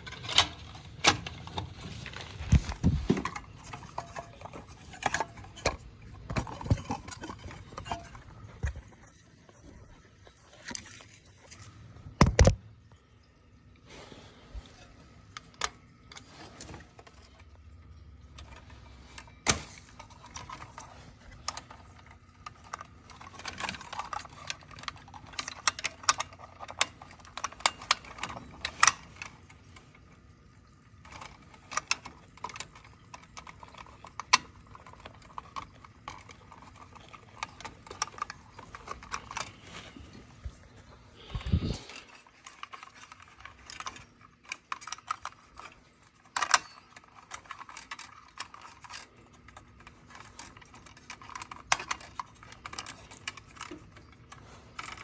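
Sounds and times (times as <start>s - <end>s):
hand tools clicking and clinking: 0.0s - 8.8s, 41.2s - 55.0s.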